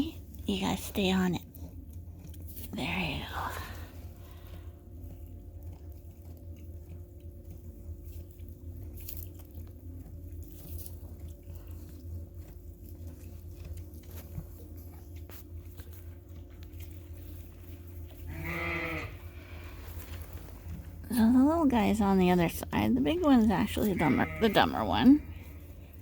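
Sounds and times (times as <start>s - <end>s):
steady low hum: 0.0s - 26.0s
sheep mouth sounds: 0.1s - 20.1s.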